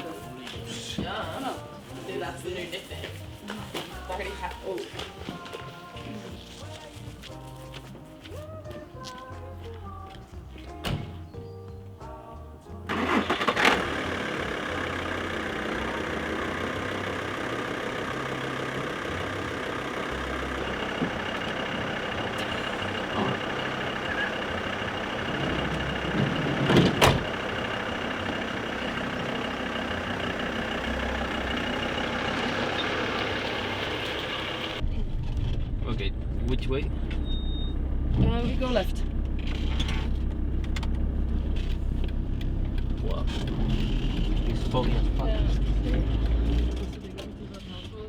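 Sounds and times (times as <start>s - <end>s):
motor vehicle running: 12.9s - 48.0s.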